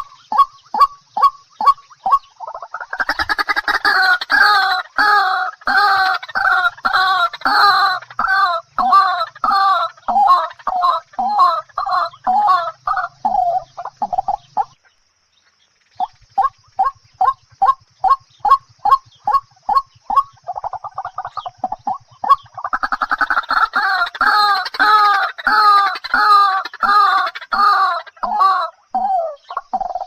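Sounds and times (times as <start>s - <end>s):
bird clucking calls: 0.0s - 30.0s.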